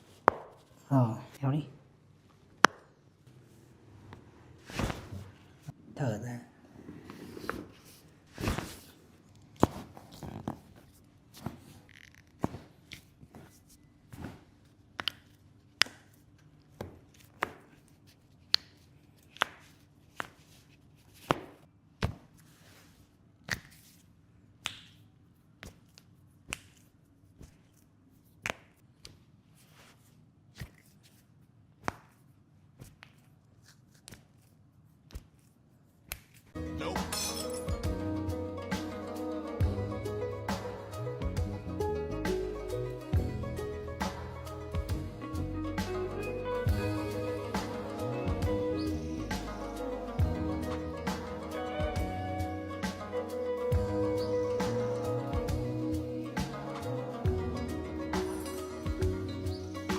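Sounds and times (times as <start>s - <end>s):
hands slapping a back: 0.2s - 0.6s, 16.8s - 17.7s, 18.5s - 20.5s, 21.2s - 22.4s, 23.4s - 24.0s, 24.6s - 25.0s, 25.6s - 27.6s, 28.4s - 29.2s, 31.8s - 32.2s.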